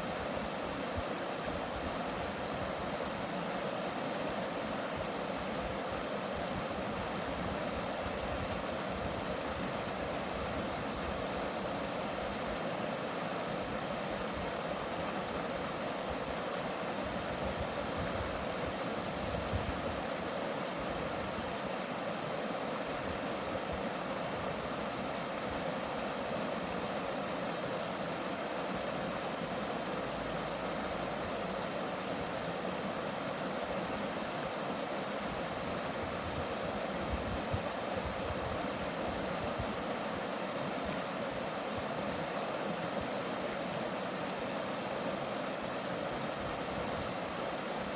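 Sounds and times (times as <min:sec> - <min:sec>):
stream rushing over rocks: 0:00.0 - 0:47.9.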